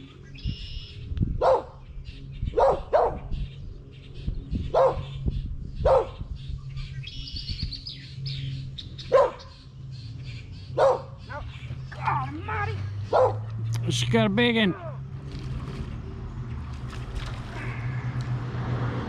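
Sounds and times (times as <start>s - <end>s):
dog barking: 1.4s - 1.8s, 2.5s - 3.3s, 4.7s - 5.1s, 5.8s - 6.2s, 9.1s - 9.5s, 10.8s - 11.4s, 13.1s - 13.5s.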